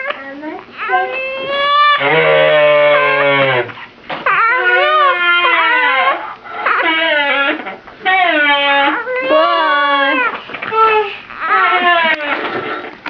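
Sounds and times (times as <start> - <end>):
high-pitched wailing cries: 0.0 - 12.5.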